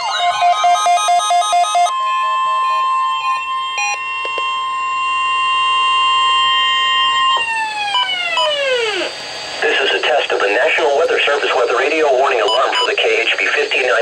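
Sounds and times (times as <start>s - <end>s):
weather radio alarm tone: 0.0s - 14.0s
quick electronic beeps: 12.4s - 13.0s.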